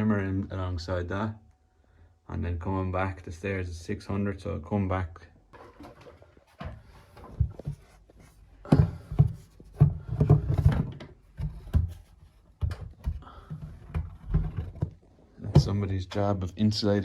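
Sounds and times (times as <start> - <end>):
dull knocks and bumps: 6.6 - 15.8.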